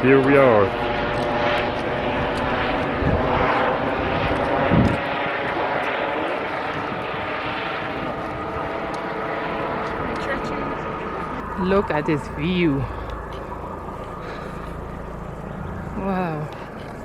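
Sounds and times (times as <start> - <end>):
engine drone: 0.0 - 17.0.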